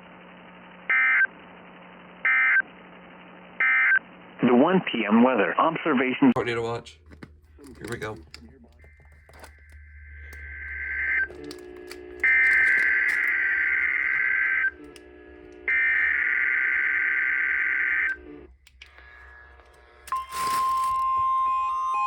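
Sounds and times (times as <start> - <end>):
steady warning alarm tone: 7.0 - 22.0
burst of static: 7.8 - 21.2
screeching data bursts: 8.0 - 18.4.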